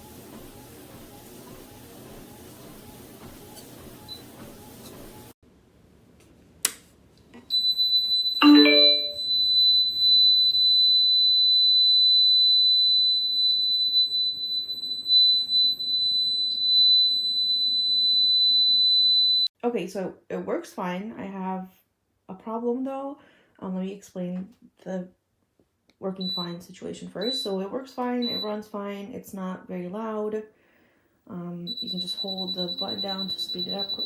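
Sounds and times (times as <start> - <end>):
brief low tone: 8.4 - 9.2.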